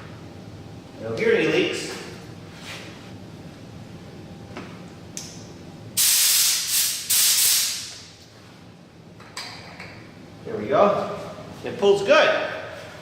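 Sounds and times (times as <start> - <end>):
compressed air hissing from hose: 6.0 - 8.0.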